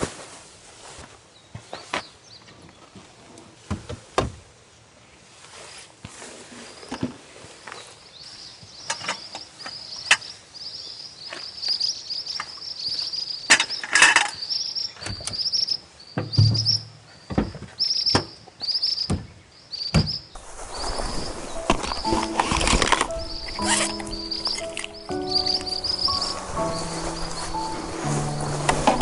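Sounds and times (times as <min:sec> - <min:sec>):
insect chirping: 0:08.2 - 0:29.0.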